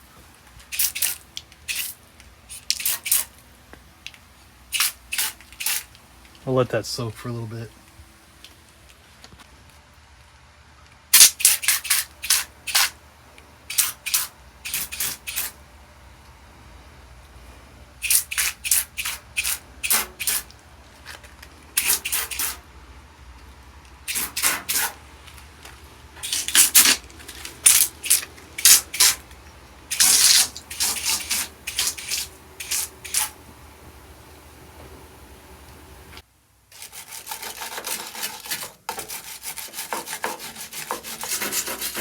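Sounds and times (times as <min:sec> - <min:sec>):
spray can hissing bursts: 0:00.7 - 0:03.3, 0:04.7 - 0:06.0, 0:11.1 - 0:13.0, 0:13.7 - 0:15.6, 0:18.0 - 0:20.5, 0:21.8 - 0:22.6, 0:24.1 - 0:25.0, 0:26.2 - 0:27.0, 0:27.6 - 0:29.2, 0:29.9 - 0:33.4.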